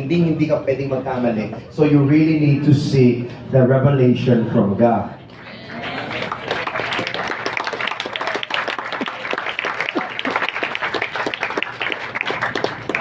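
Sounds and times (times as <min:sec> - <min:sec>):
audience clapping: 0:05.3 - 0:13.0.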